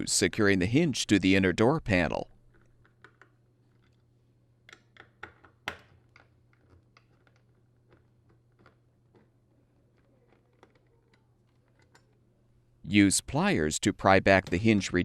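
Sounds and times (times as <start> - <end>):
screwdriver clicks and taps: 4.7 - 9.3.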